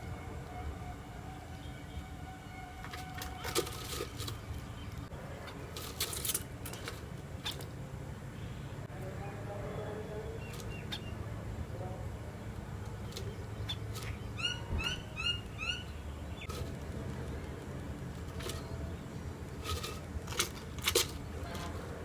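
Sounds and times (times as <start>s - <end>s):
sparrow chirping: 0.0s - 16.7s.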